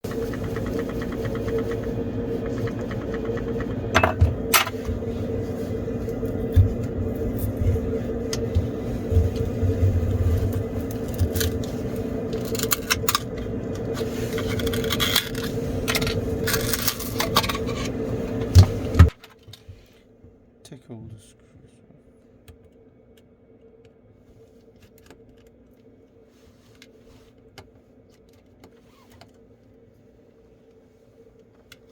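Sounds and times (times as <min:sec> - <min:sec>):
steady hum: 0:00.0 - 0:28.2.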